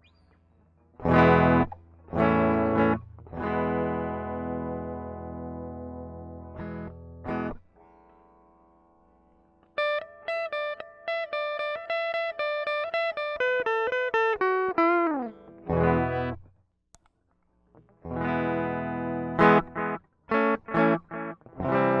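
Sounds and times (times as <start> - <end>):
electric guitar through effects: 0.0 - 8.6, 9.6 - 16.5, 17.7 - 22.0.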